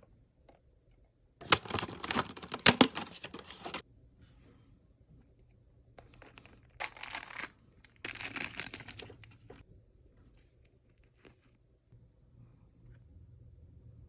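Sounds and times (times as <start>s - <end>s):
packaging crinkling and tearing: 1.4s - 3.8s, 6.2s - 9.6s.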